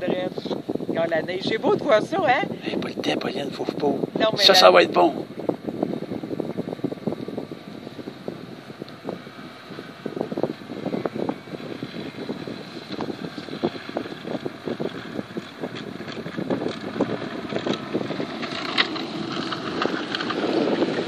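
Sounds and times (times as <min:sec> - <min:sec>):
wind buffeting microphone: 0:00.0 - 0:21.0
tracked snowmobile running: 0:05.7 - 0:21.0
clatter of running gear: 0:15.7 - 0:21.0.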